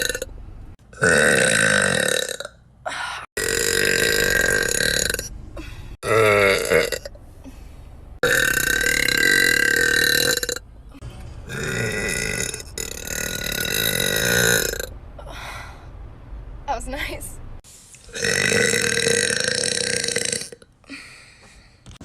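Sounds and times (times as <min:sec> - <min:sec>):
person burping loudly: 0:00.0 - 0:00.3, 0:00.9 - 0:02.6, 0:03.3 - 0:05.3, 0:06.0 - 0:07.1, 0:08.2 - 0:10.6, 0:11.5 - 0:14.9, 0:18.1 - 0:20.7.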